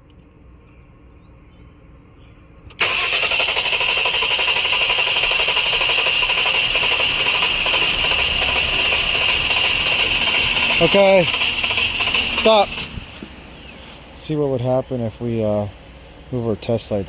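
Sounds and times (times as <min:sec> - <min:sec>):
engine starter cranking: 0:02.7 - 0:14.1.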